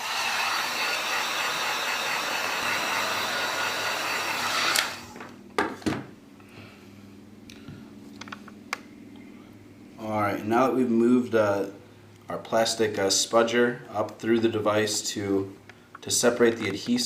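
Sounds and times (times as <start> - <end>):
heat gun blowing: 0.0 - 5.2.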